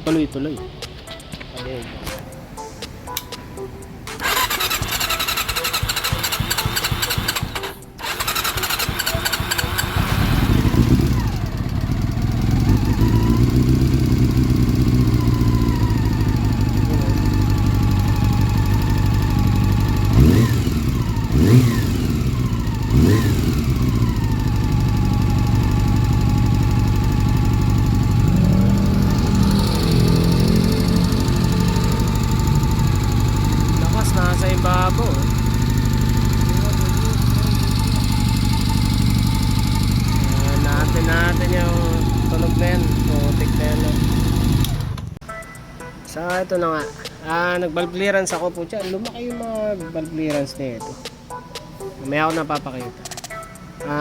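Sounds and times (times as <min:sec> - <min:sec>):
engine ticking: 0:04.1 - 0:45.2
electric starter cranking engine: 0:04.2 - 0:45.2
motorcycle engine idling: 0:04.2 - 0:45.2.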